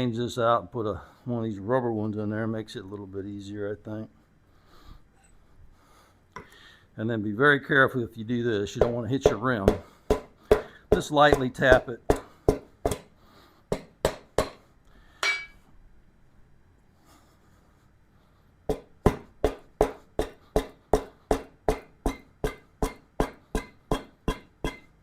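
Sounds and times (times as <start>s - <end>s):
hammer tapping wheel rim: 8.7s - 13.1s, 18.7s - 25.0s.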